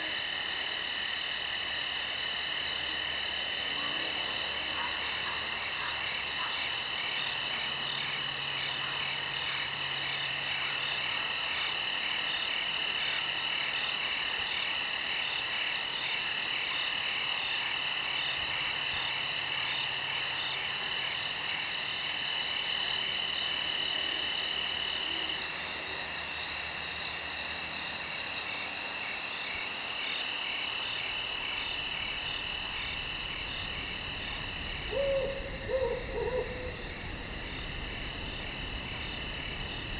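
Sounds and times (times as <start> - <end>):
insects trilling: 0.0 - 39.9
rapid high insect chirping: 25.7 - 39.9.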